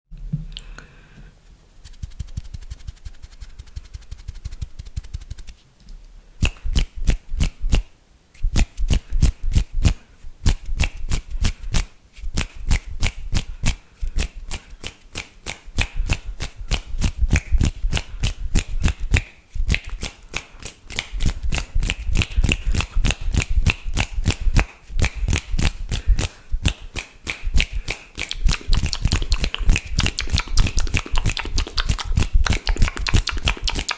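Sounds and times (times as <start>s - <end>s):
wet tongue clicks and pops: 15.2s - 33.9s.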